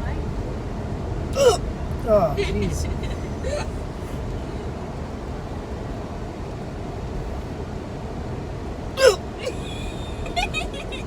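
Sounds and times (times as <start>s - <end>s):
steady low rumble: 0.0s - 11.0s
sharp hiccup: 1.4s - 1.6s, 9.0s - 9.6s.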